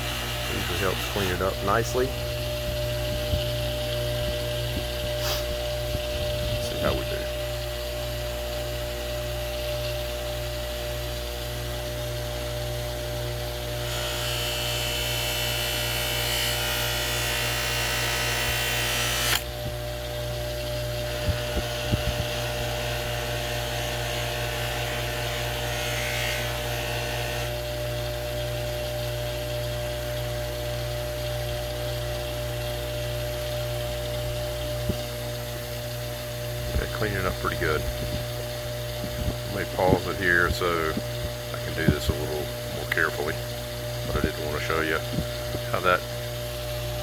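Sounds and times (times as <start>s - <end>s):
blade rubbing on buffing wheel: 0.0s - 1.9s, 21.1s - 27.5s
polishing wheel motor humming: 0.0s - 29.0s.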